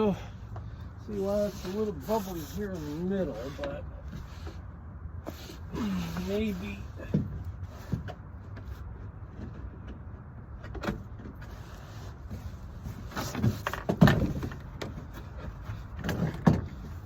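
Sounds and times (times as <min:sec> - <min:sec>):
board scraping: 0:01.1 - 0:04.7.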